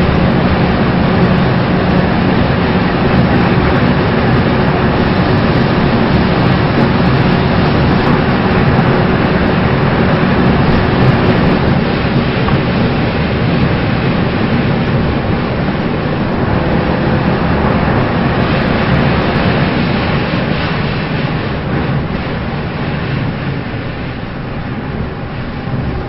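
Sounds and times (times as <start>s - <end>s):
race car engine and tyre noise: 0.0s - 26.0s.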